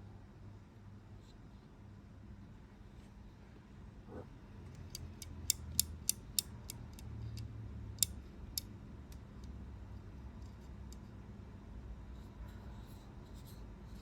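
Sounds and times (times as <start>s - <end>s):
sharp light clicks: 4.9s - 9.6s.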